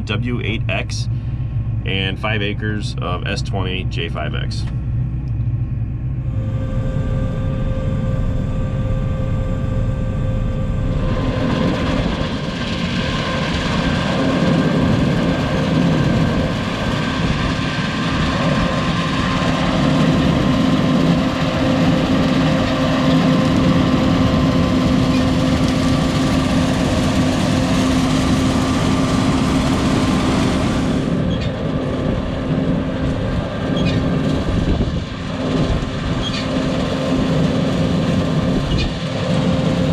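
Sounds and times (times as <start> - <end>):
combine harvester humming: 0.0 - 39.9
loud rushing noise: 10.5 - 39.9.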